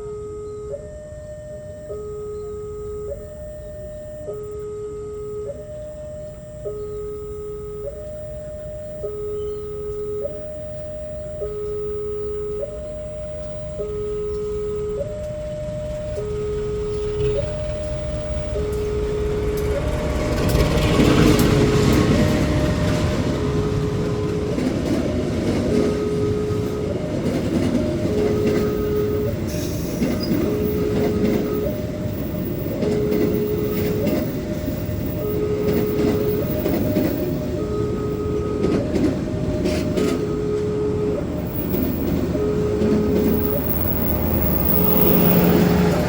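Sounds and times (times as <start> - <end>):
level-crossing alarm two-tone: 0.0 - 46.0
train wheels rumbling on rails: 15.2 - 46.0.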